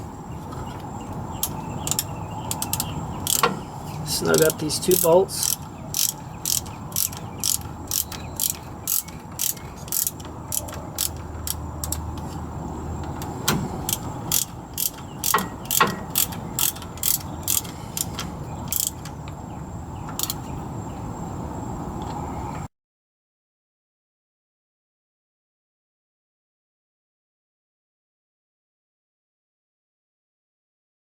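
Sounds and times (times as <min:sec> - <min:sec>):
ratchet wrench clicking: 0:01.4 - 0:03.6, 0:04.2 - 0:12.3, 0:13.2 - 0:19.2, 0:20.2 - 0:20.4.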